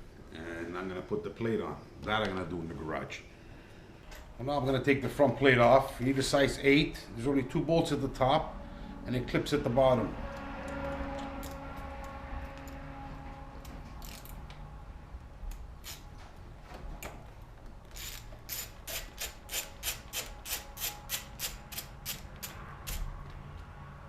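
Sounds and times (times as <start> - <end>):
ratchet clicking: 14.0 - 14.4, 15.8 - 16.0, 17.9 - 23.1.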